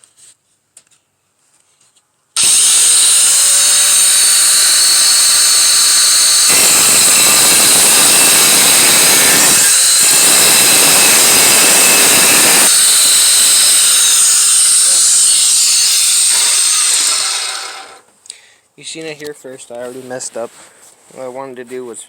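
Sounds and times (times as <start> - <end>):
angle grinder cutting steel: 2.4 - 18.0.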